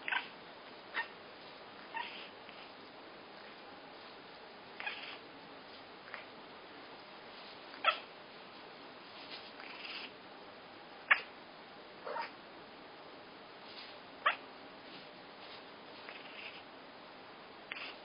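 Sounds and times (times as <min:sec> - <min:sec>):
cat making sharp calls: 0:04.8 - 0:05.2.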